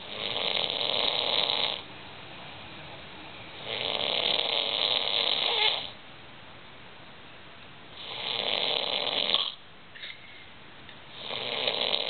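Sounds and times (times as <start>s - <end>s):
man snoring: 0.1s - 1.8s, 3.6s - 5.9s, 8.0s - 9.6s, 11.2s - 12.0s.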